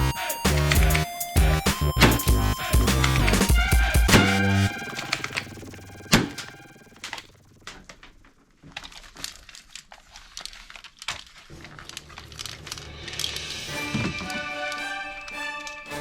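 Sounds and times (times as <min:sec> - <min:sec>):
plastic packaging crinkling: 0:07.0 - 0:13.4.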